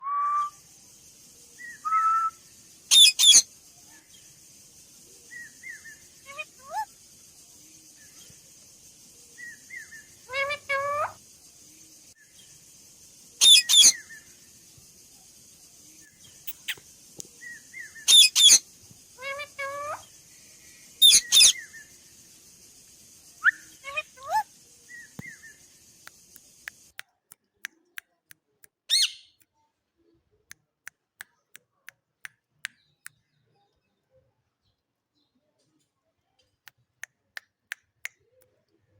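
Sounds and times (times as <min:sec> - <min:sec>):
parakeet chirps: 0:01.6 - 0:03.5, 0:05.2 - 0:07.4, 0:09.4 - 0:11.3, 0:13.4 - 0:14.3, 0:16.2 - 0:20.2, 0:20.8 - 0:22.0, 0:23.2 - 0:27.0, 0:28.9 - 0:29.4
parakeet screeching: 0:02.9 - 0:03.4, 0:10.3 - 0:11.2, 0:18.1 - 0:18.6, 0:21.0 - 0:21.5.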